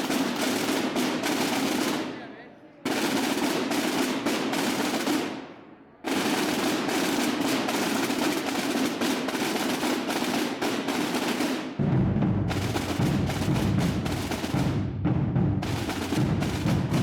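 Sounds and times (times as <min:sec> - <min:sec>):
massed drums rolling: 0:11.8 - 0:17.0.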